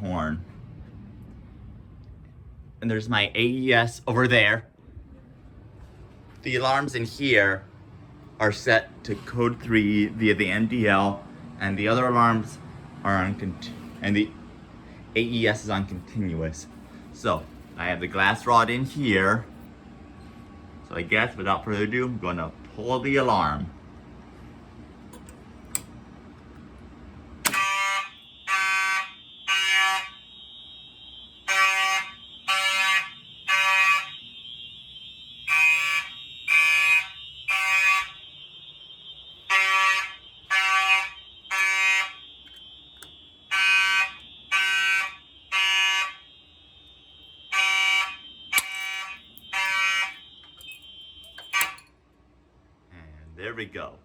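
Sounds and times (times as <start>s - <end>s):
fire alarm horns blasting: 1.5s - 5.1s, 5.8s - 52.5s
steady high alarm tone: 8.4s - 22.5s, 27.4s - 52.0s
glass rod snapping: 48.6s - 49.0s, 50.6s - 51.9s.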